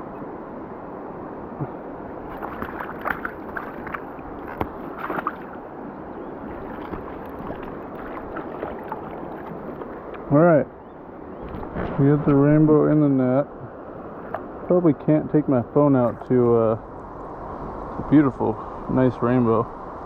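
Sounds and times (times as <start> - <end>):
river water rushing: 0.0 - 11.3
sharp splashing: 2.3 - 5.6, 6.5 - 10.0.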